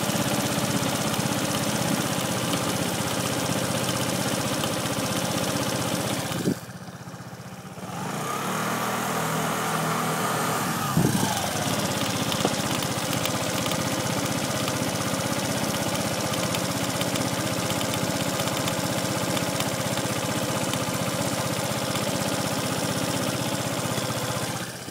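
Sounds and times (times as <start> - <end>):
rear wheel drive whine: 0.0 - 24.9
scooter engine running: 0.0 - 24.9
click: 11.9 - 14.8, 16.3 - 19.8.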